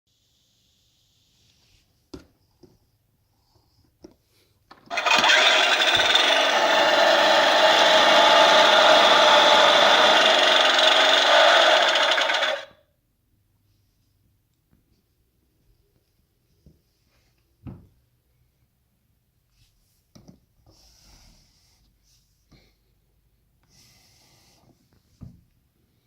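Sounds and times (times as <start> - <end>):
toy lawn mower motor noise: 4.9 - 12.8.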